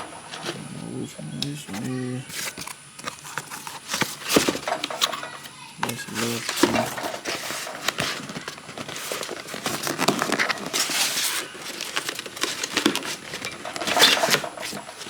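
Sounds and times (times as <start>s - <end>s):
cardboard rustling and crinkling: 0.0s - 15.0s.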